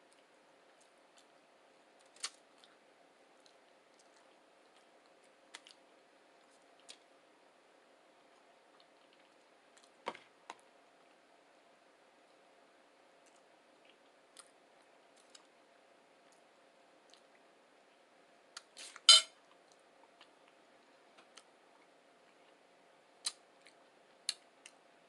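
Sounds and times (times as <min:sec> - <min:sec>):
person chewing food: 0:02.0 - 0:07.1, 0:08.3 - 0:11.2, 0:16.3 - 0:17.4.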